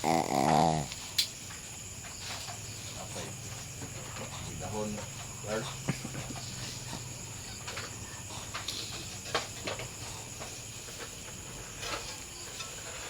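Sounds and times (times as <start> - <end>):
dog snoring softly: 0.0 - 1.0.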